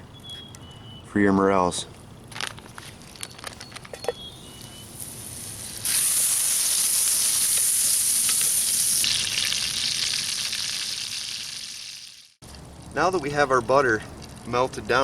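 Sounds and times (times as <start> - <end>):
butter sizzling in frying pan: 5.0 - 12.4.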